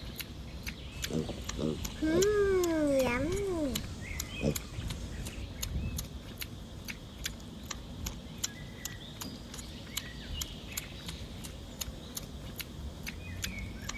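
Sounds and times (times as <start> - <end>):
regular ticking clicks: 0.0 - 13.9.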